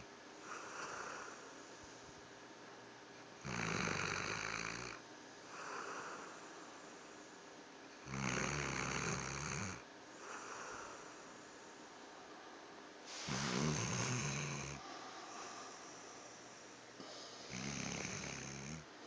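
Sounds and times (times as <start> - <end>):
dog snoring loudly: 0.4 - 1.4, 3.4 - 6.4, 8.0 - 11.2, 13.2 - 15.5, 17.5 - 18.9
dog soft breath: 13.0 - 17.9.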